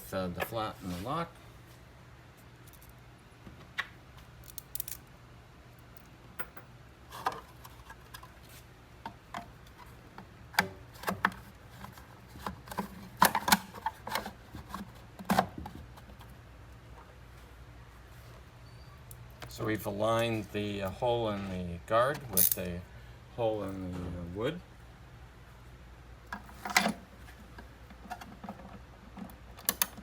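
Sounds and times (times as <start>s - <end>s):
clicks and knocks of parts handled: 3.7s - 5.1s, 9.0s - 16.3s, 26.3s - 30.0s.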